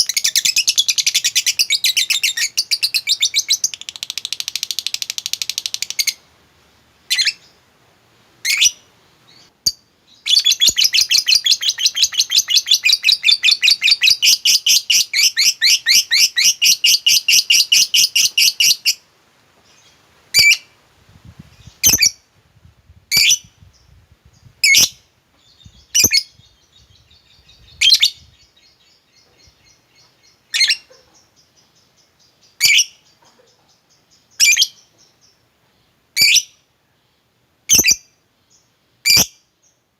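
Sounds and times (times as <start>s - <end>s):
lovebird chattering trill: 0.0s - 6.2s, 8.4s - 19.0s, 21.5s - 22.2s, 23.1s - 35.4s
sharp high bird chirps: 8.5s - 19.0s, 24.6s - 33.2s, 37.7s - 38.2s
faint bird twittering: 23.1s - 39.8s.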